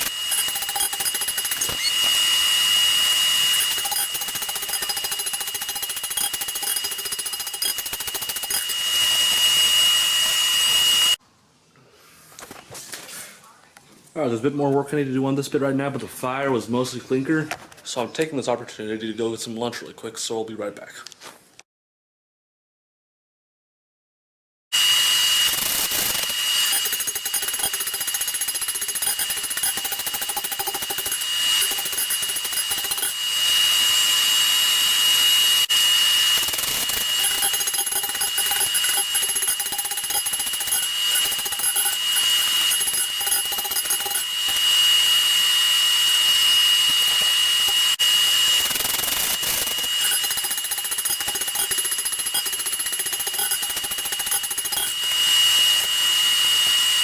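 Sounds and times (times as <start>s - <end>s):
forge blower whining: 0.0s - 11.2s, 24.8s - 57.0s.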